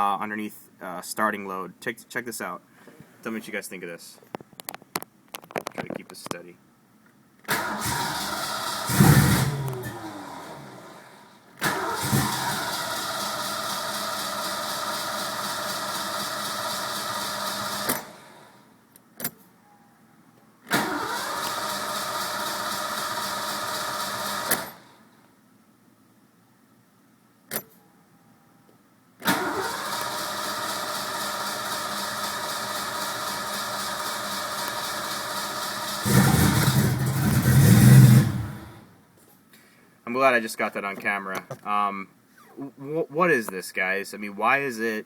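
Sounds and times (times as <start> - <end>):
car starter cranking: 7.5 - 10.9, 11.6 - 18.2, 20.7 - 24.8, 29.2 - 38.8
car engine starting: 7.5 - 18.5, 20.7 - 25.0, 29.2 - 38.9.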